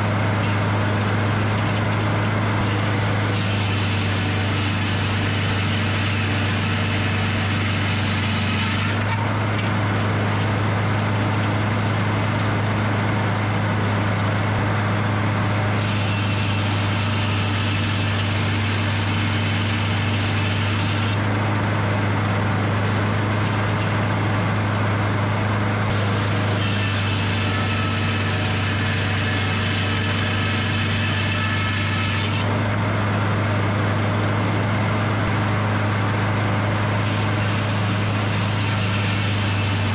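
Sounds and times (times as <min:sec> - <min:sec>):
sawmill engine drone: 0:00.0 - 0:39.9
saw blade hissing through logs: 0:02.7 - 0:09.0, 0:15.8 - 0:21.2, 0:25.9 - 0:32.5, 0:37.0 - 0:39.9.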